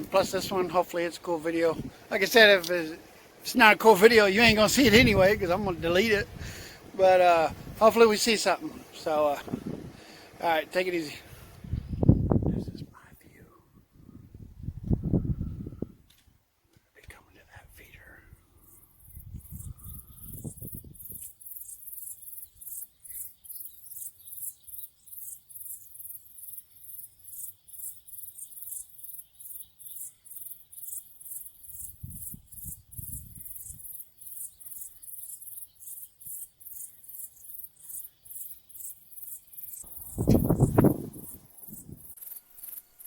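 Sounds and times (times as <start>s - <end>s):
insects chirping: 0.0s - 12.4s, 17.8s - 43.0s
faint continuous buzz: 0.0s - 13.8s
low muffled thuds: 40.1s - 42.0s.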